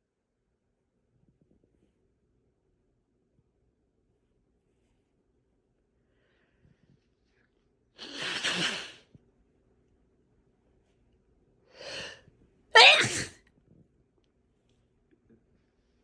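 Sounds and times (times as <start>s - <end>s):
sharp in-breath: 11.8s - 12.2s
person sneezing: 12.8s - 13.3s.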